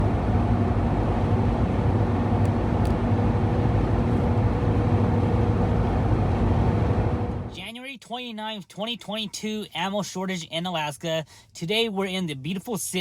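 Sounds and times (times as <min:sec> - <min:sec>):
road noise: 0:00.0 - 0:07.6
vehicle engine hum: 0:00.0 - 0:07.6.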